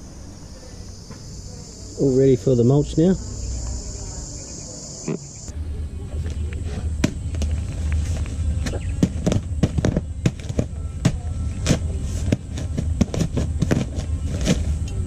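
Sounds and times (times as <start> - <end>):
steady low rumble: 0.0 - 15.0
dry mulch crackling and rustling: 6.1 - 15.0.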